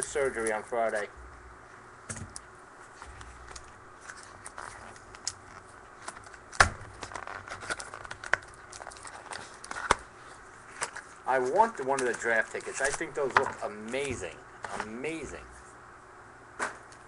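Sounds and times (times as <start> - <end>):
cards being handled: 2.1 - 15.4
plastic wrapper crinkling and tearing: 3.0 - 14.1
scissors cutting plastic: 10.8 - 14.9
loud snap: 16.6 - 17.0.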